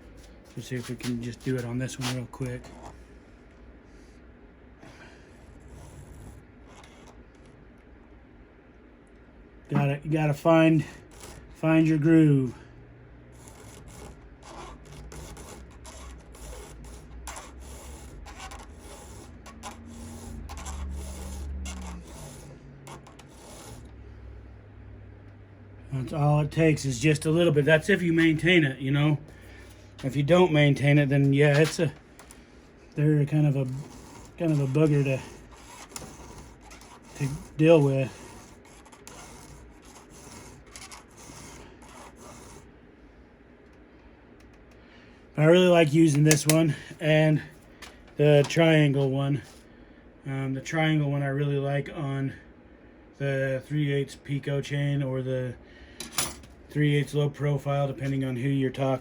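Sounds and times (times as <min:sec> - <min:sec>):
file rasping on chainsaw chain: 0:13.4 - 0:24.0, 0:33.3 - 0:42.7.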